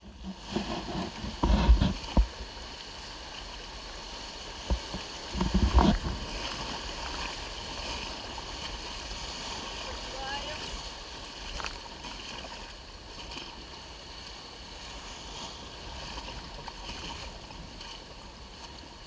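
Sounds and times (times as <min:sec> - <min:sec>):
moving water: 0:00.0 - 0:19.0
splashing and knocks: 0:04.6 - 0:07.3.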